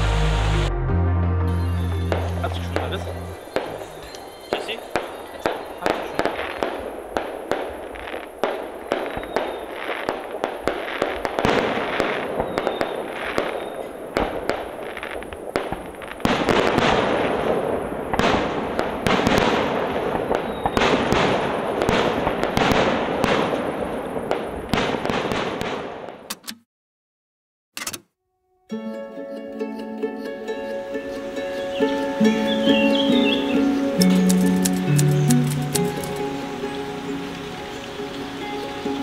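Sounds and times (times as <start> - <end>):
fireworks bangs and crackles: 2.0 - 26.3.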